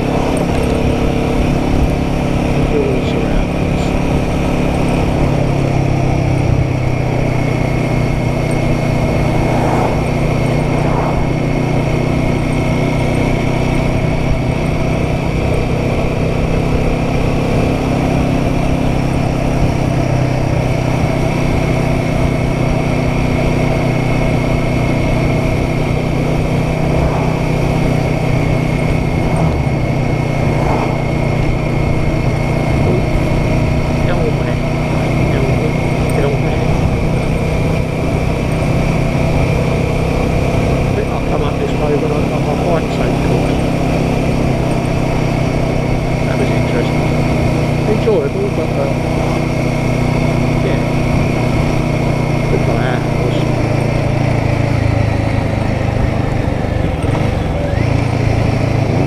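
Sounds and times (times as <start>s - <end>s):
motorcycle engine running: 0.0s - 59.0s
wind rushing: 7.9s - 13.0s, 25.6s - 34.0s.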